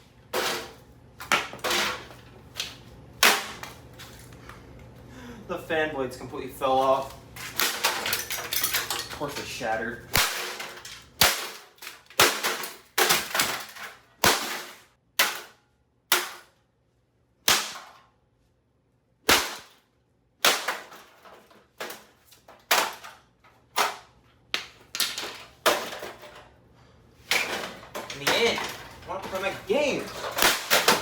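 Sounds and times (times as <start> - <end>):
blows smashing computer case: 10.1 - 15.5, 27.3 - 31.0.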